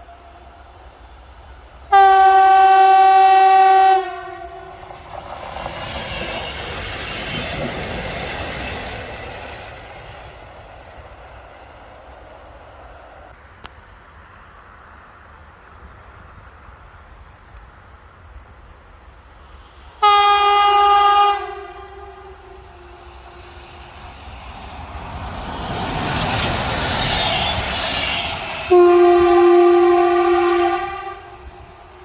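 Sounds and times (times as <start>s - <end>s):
train rolling on rails: 0.0s - 32.0s
train air horn blast: 1.9s - 4.9s, 20.0s - 23.6s, 27.0s - 32.0s.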